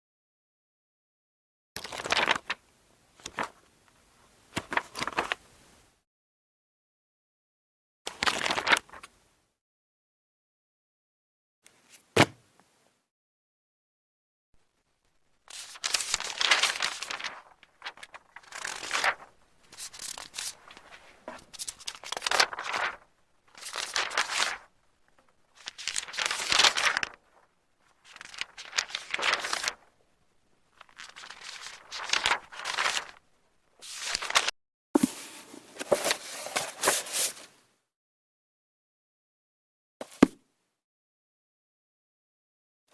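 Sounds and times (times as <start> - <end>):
book pages turning: 8.2 - 9.1, 15.5 - 24.7, 25.3 - 29.9, 30.7 - 33.2, 33.8 - 37.5.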